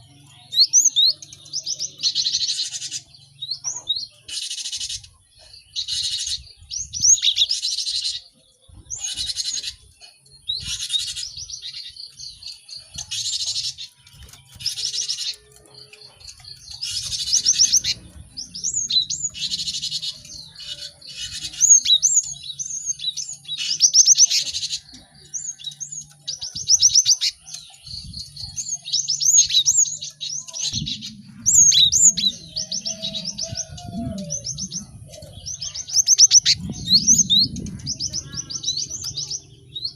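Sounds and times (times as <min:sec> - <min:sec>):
birds chirping and whistling: 0:00.0 - 0:39.9
harsh rasping bird calls: 0:29.2 - 0:39.9.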